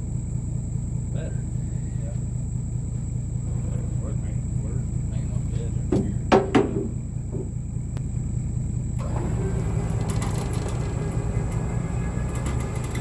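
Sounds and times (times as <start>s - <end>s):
engine idling: 0.0s - 13.0s
sharp knocks: 5.9s - 7.6s.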